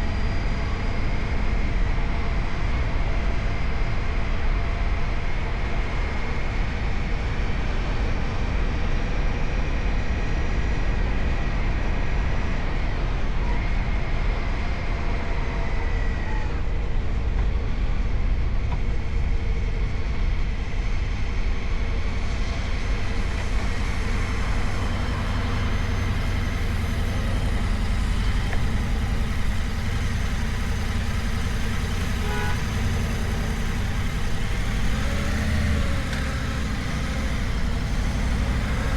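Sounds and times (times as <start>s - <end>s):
high-pitched whine: 20.1s - 38.9s
motorcycle engine rumbling: 23.0s - 38.9s.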